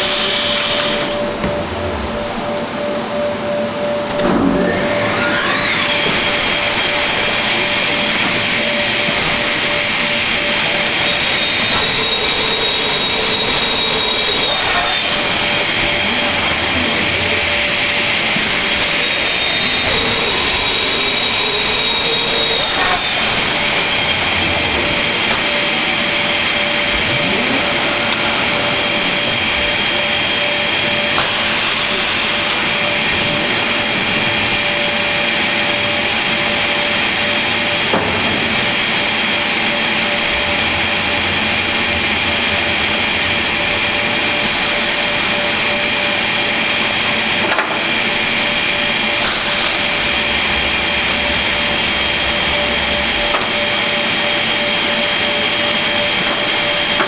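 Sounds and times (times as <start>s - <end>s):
cutting machine sawing board: 4.4s - 38.8s.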